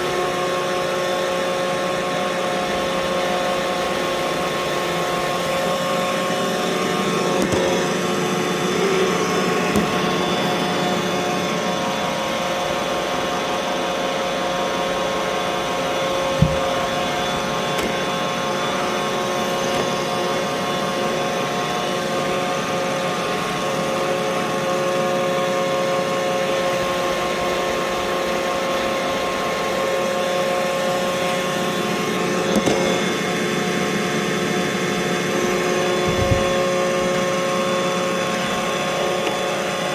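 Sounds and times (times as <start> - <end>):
robot vacuum motor whirring: 1.8 - 13.2, 14.6 - 25.4, 26.4 - 39.9
short knocks: 16.4 - 17.0.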